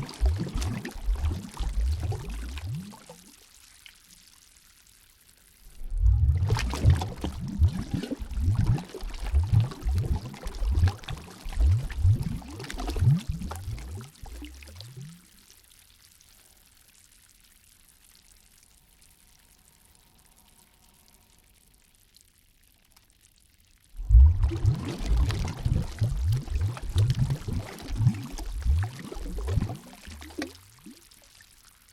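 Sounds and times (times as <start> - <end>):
water gurgling and sloshing: 0.0 - 3.4, 5.6 - 15.4, 24.0 - 31.6.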